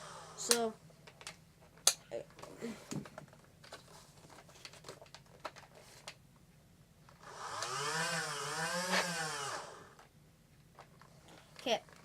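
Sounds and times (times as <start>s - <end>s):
plastic clicks and rattles: 1.0s - 6.2s
flywheel motors whining: 7.2s - 10.0s.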